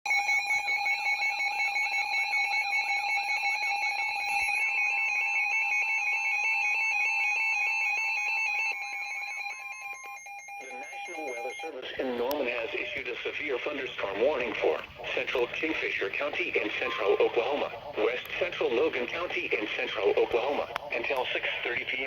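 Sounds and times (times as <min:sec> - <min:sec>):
emergency alert alarm tones: 0:00.1 - 0:22.0
fast repeating warble: 0:10.6 - 0:22.0.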